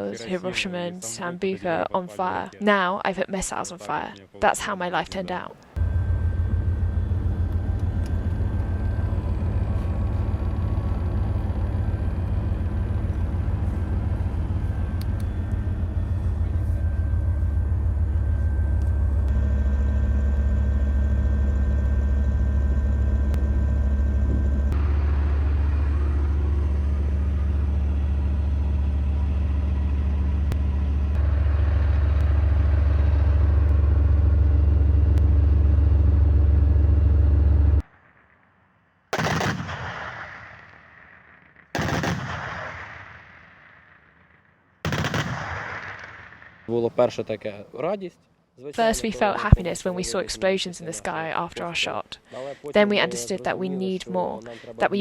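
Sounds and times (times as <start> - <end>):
heavy diesel engine rumbling: 5.7 - 37.9.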